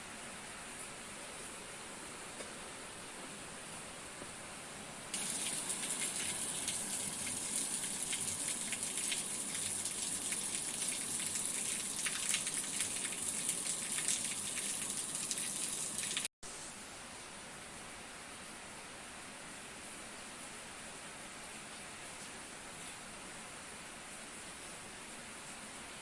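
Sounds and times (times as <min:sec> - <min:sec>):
rain falling: 0:05.1 - 0:16.3.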